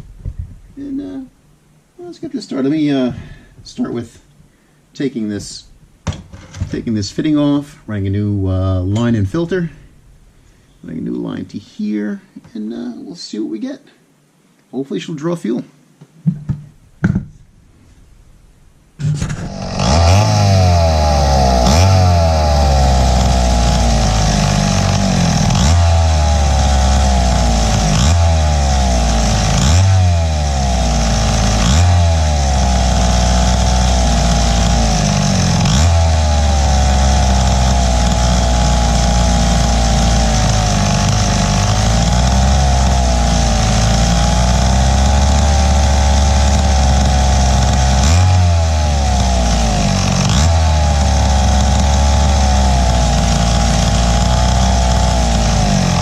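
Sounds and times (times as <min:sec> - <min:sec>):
chainsaw engine running unevenly: 0:19.2 - 0:56.0.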